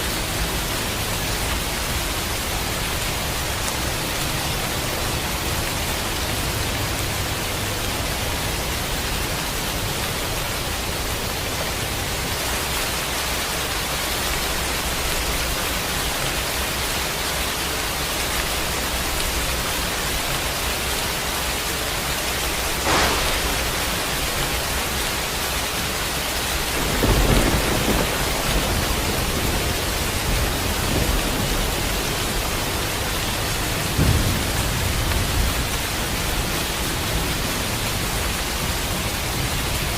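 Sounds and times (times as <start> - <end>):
steady rain: 0.0 - 39.9
low rolling thunder: 22.5 - 39.9
thunder crack: 22.6 - 25.4, 26.5 - 36.5.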